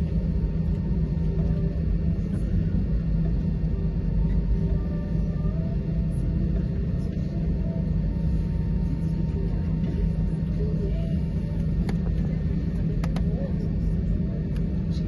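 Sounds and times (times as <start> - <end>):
aircraft cabin rumble: 0.0 - 15.0.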